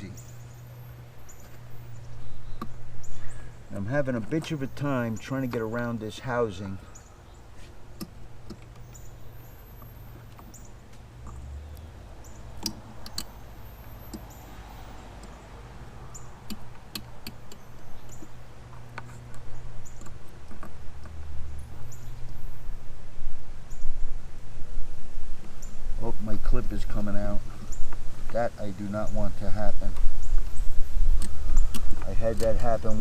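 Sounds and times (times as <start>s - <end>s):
hands clicking clips into headlight: 12.6s - 14.4s, 29.9s - 33.0s.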